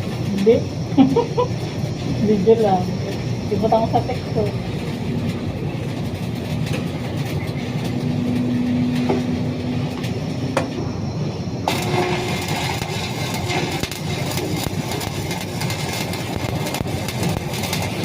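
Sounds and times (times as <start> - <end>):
heavy machinery drone: 0.0 - 18.0
bright crackling hiss: 9.8 - 18.0.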